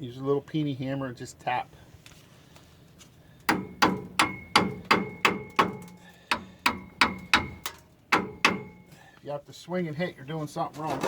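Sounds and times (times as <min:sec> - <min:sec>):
hammer tapping metal brake pad: 0:03.5 - 0:08.9.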